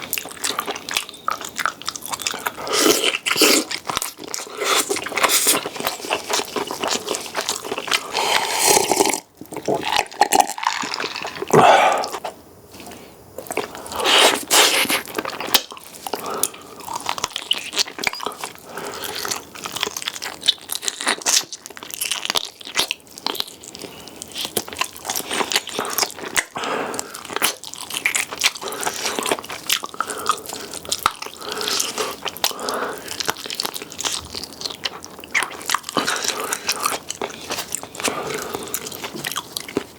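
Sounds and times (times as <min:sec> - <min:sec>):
person chewing and crunching: 0:00.0 - 0:39.9.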